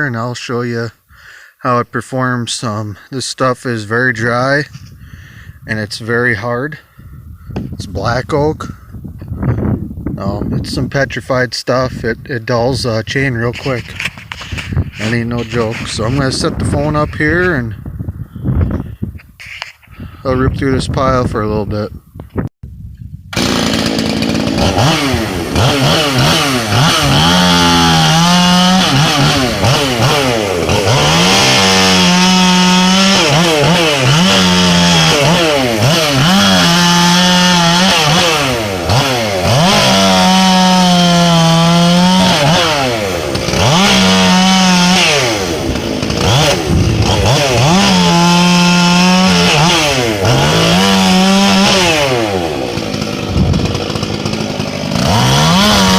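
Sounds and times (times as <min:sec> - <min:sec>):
chainsaw cutting wood: 0:13.2 - 0:17.5, 0:23.3 - 0:55.9.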